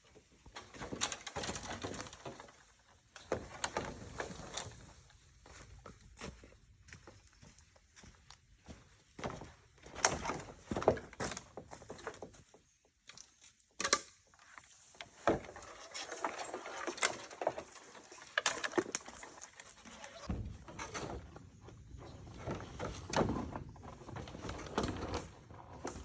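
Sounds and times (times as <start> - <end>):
tools scraping bamboo: 13.8 - 21.2.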